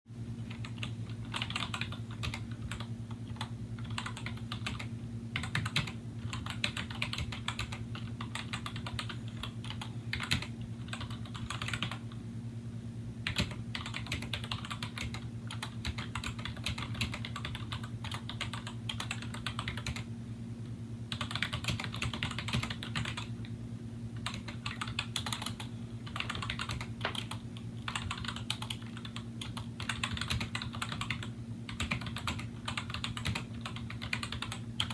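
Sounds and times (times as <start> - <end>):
steady low hum: 0.1 - 34.9
keyboard keys clicking: 0.5 - 12.1, 13.2 - 20.0, 21.1 - 23.3, 24.2 - 34.9.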